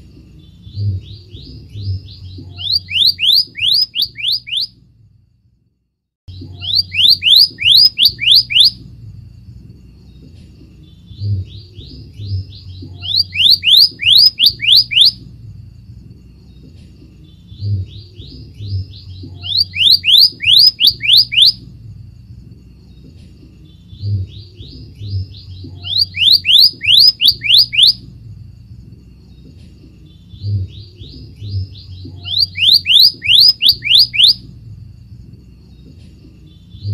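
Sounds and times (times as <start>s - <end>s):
faint low hum: 0.0s - 36.9s
bird whistling song: 0.4s - 4.8s, 6.3s - 8.9s, 10.8s - 15.3s, 17.2s - 21.6s, 23.6s - 28.1s, 30.1s - 34.5s.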